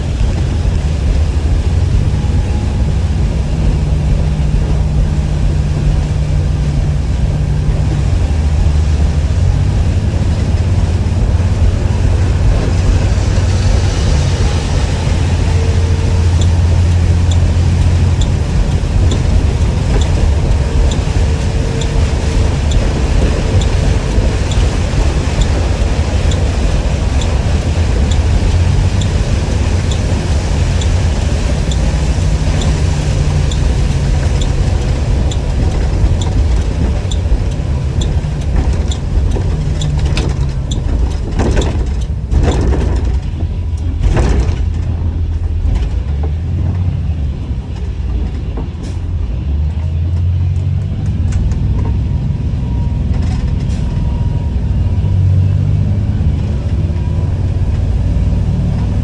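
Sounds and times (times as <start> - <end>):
regular ticking: 0.0 - 44.6
bus engine drone: 0.0 - 59.0.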